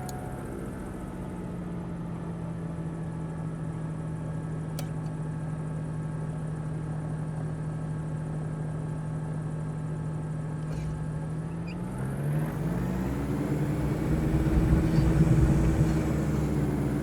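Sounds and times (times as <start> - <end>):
low machine hum: 12.5 - 17.0.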